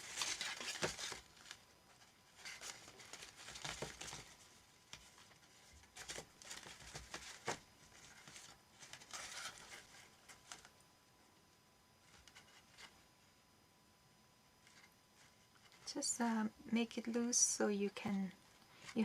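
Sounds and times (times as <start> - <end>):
paper pages rustling: 0.0 - 10.8.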